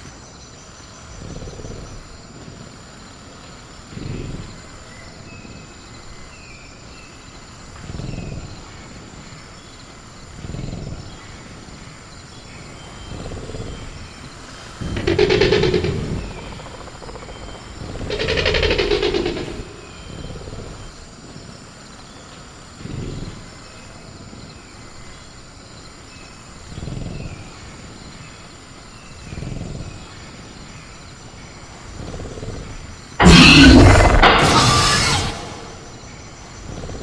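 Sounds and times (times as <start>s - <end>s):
creature growling: 14.8s - 20.0s, 33.2s - 36.0s
cage clattering crash: 33.2s - 36.0s.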